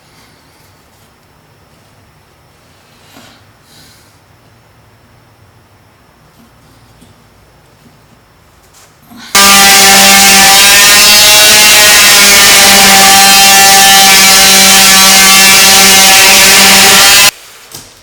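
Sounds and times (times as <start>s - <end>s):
electric power sander running: 9.4s - 11.0s, 11.8s - 17.3s.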